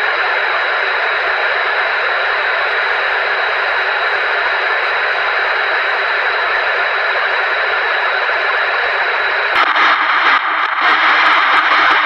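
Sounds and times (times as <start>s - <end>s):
radio static hiss: 9.6s - 12.0s
static crackles: 9.6s - 12.0s.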